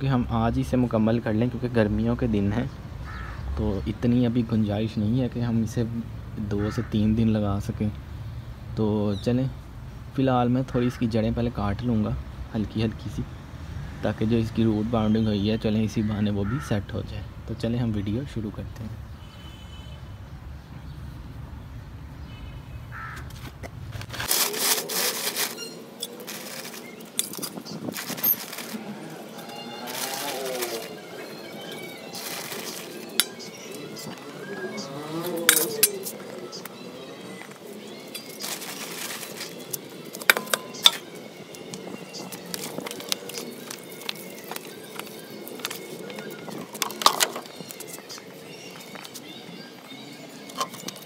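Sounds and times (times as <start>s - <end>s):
rough sawing of roots: 24.0s - 36.2s.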